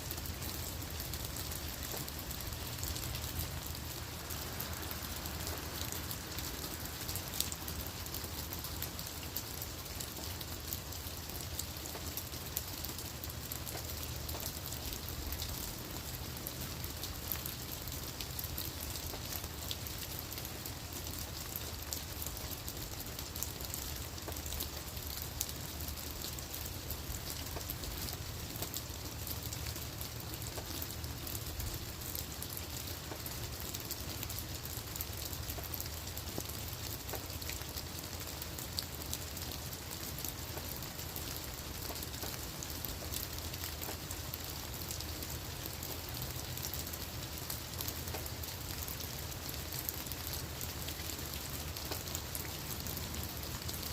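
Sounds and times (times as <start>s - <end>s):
rain falling on leaves: 0.0s - 53.9s.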